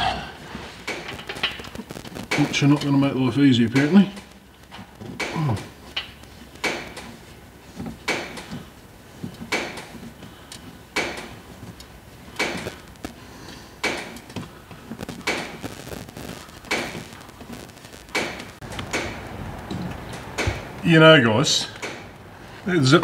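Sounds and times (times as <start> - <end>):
sharp clicks: 0.8 - 3.0, 3.7 - 7.1, 10.5 - 20.8, 21.6 - 22.3.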